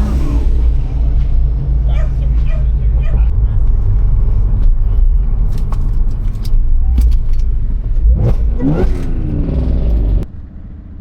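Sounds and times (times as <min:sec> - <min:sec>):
engine revving: 0:00.0 - 0:01.2, 0:07.9 - 0:10.3
car engine rumbling: 0:00.0 - 0:11.0.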